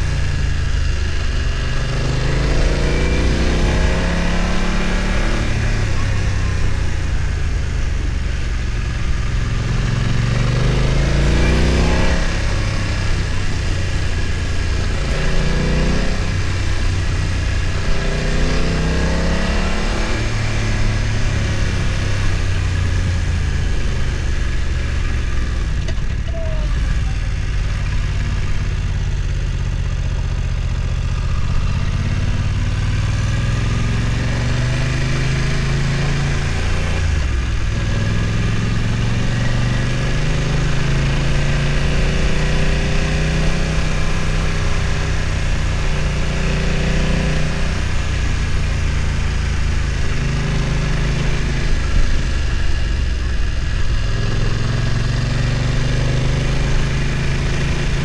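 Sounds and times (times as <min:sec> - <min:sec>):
motorcycle engine revving: 0:00.0 - 0:58.0.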